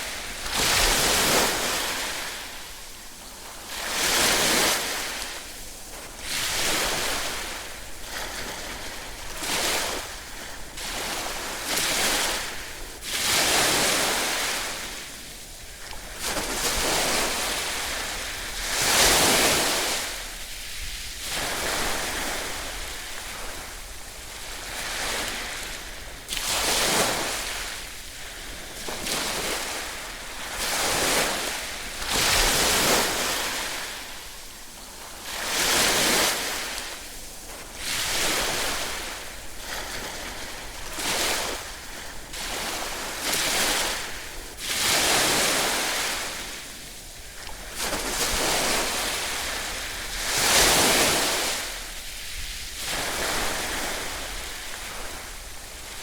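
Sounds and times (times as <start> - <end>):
ocean waves breaking on shore: 0.0 - 56.0.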